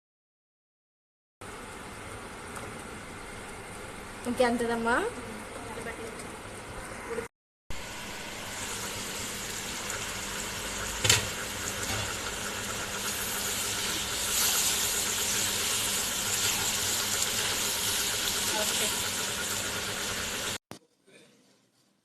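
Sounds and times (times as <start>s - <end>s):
curry boiling and sizzling in a pot: 7.7s - 20.6s.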